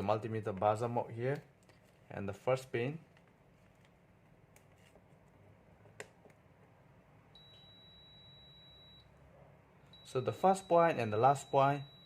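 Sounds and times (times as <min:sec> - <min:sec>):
multimeter continuity beep: 0:07.3 - 0:09.2, 0:09.9 - 0:12.0.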